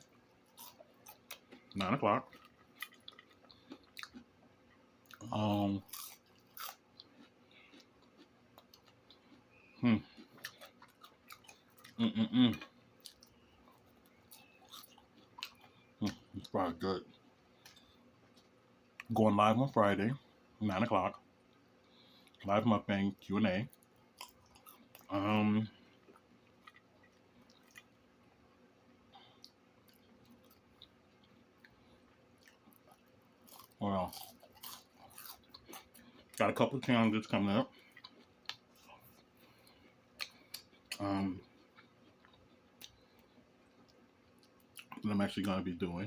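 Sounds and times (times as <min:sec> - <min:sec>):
person chewing: 0:00.2 - 0:19.1, 0:23.7 - 0:28.0, 0:29.2 - 0:36.9, 0:37.7 - 0:45.0
closed-mouth humming: 0:11.6 - 0:13.4.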